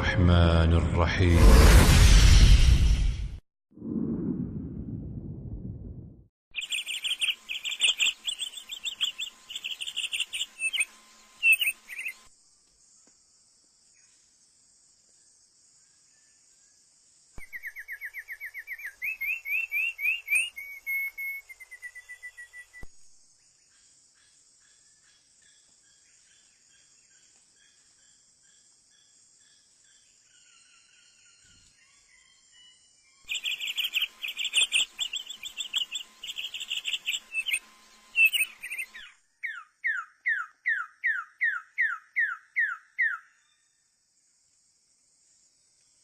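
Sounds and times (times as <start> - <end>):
birds calling: 6.6 - 12.2, 33.3 - 43.2
whistled bird notes falling: 17.4 - 22.9
high-pitched insect drone: 33.3 - 38.9.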